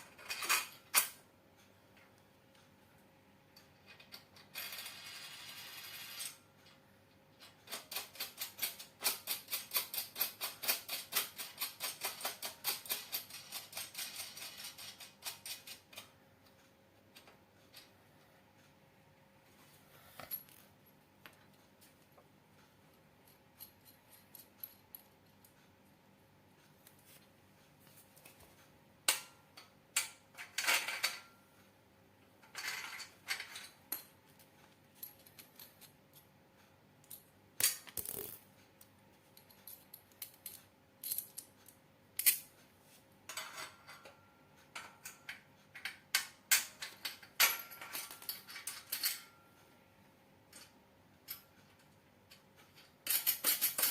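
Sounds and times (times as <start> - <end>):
metal parts and tools clinking: 0.0 - 1.2, 7.4 - 16.2, 23.2 - 25.7, 28.2 - 31.4, 32.4 - 36.2, 37.0 - 38.4, 39.4 - 42.6, 43.3 - 49.6, 50.5 - 53.9.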